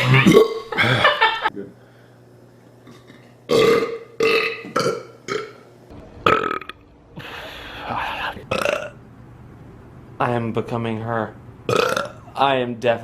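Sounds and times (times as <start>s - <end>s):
person burping: 0.0s - 1.2s, 2.9s - 5.6s, 6.2s - 7.4s, 8.4s - 9.0s, 11.7s - 12.2s.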